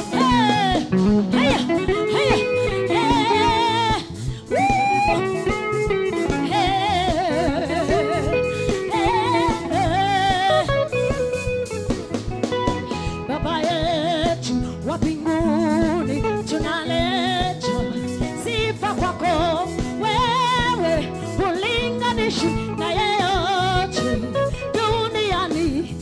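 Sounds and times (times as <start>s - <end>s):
singer with heavy vibrato: 0.0s - 5.6s
band bass and chords: 0.0s - 26.0s.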